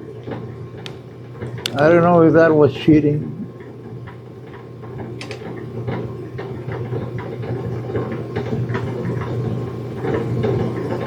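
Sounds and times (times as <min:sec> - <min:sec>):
low electrical hum: 0:00.0 - 0:11.0
clicks of objects handled: 0:05.2 - 0:05.5.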